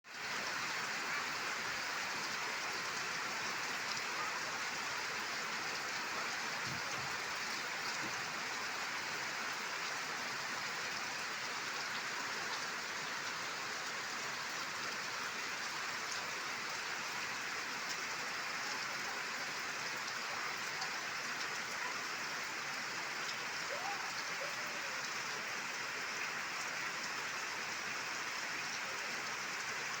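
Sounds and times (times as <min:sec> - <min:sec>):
rain pattering: 0:00.1 - 0:30.0.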